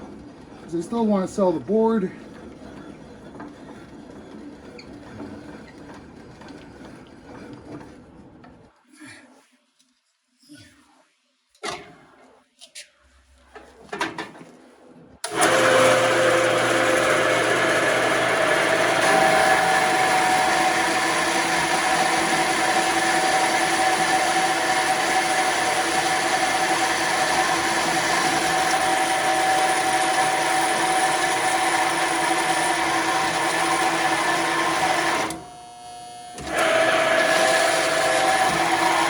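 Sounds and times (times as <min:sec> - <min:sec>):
band saw cutting metal: 0:15.2 - 0:39.0.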